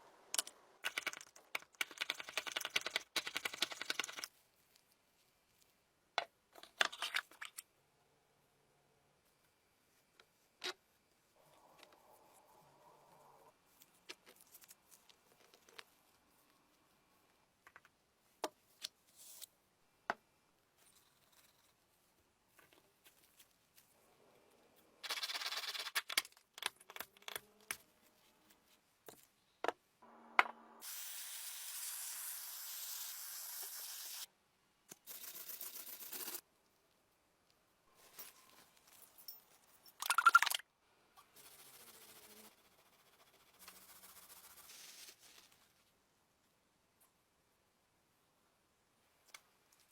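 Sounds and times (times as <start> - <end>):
pressurised spray hissing: 30.8 - 34.2.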